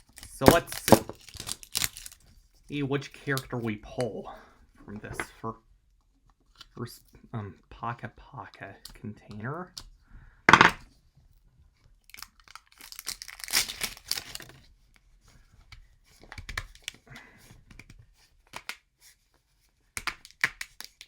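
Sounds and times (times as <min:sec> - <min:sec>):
packaging tearing and crinkling: 0:00.0 - 0:02.4, 0:12.0 - 0:14.6.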